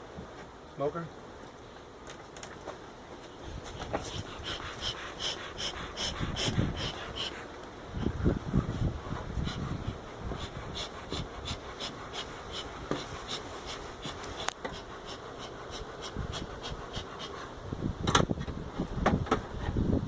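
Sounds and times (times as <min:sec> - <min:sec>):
honey bees buzzing: 0:02.8 - 0:18.0.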